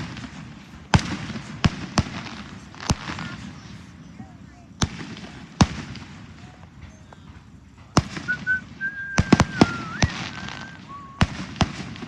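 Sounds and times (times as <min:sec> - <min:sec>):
fireworks bangs: 0:00.0 - 0:12.0
high steady whistle: 0:07.9 - 0:11.8.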